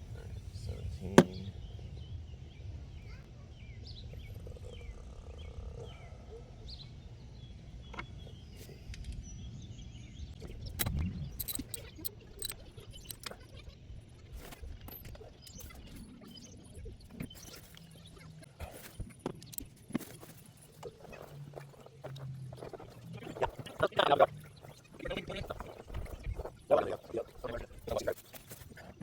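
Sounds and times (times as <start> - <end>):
sharp clicks and knocks: 10.7 - 13.4.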